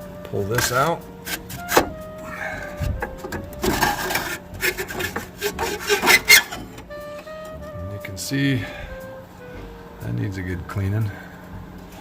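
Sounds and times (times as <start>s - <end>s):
metal parts scraping and rubbing: 0.6s - 2.0s, 3.1s - 6.9s
irregular knocks: 1.5s - 4.2s.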